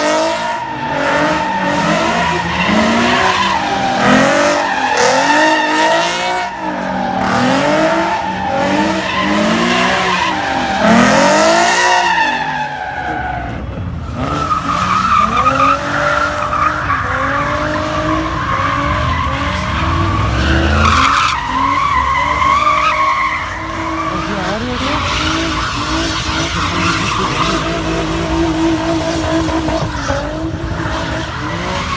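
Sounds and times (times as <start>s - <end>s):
car engine revving: 0.0s - 31.9s
tires squealing: 0.0s - 31.9s.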